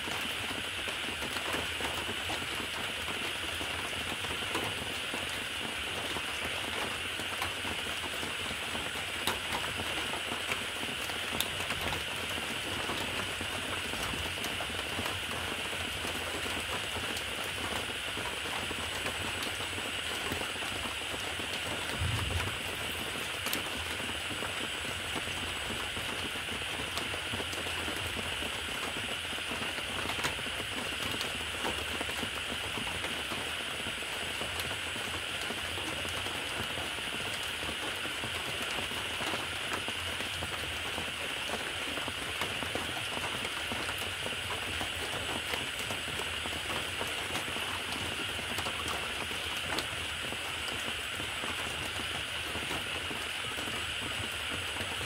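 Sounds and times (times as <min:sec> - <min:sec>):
steady rain patter: 0:00.0 - 0:55.0
low thump: 0:21.9 - 0:22.8.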